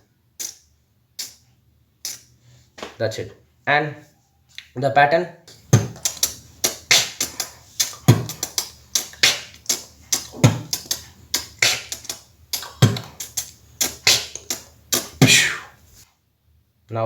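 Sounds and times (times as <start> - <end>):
beatboxing clicking hi-hat strokes: 0.4 - 2.4, 5.5 - 16.0
beatboxing kick drum thumps: 5.5 - 15.9.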